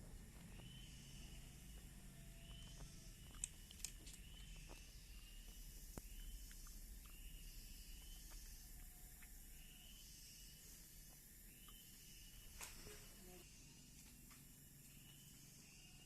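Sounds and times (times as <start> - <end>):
faint high chirp: 0.0 - 16.0
cat chewing clicks: 1.8 - 7.2.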